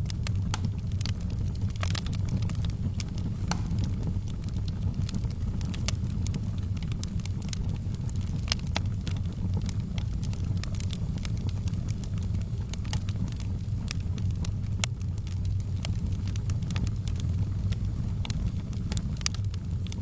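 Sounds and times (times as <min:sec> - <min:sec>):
fire crackling and popping: 0:00.0 - 0:20.0
low rumble of flames: 0:00.0 - 0:20.0.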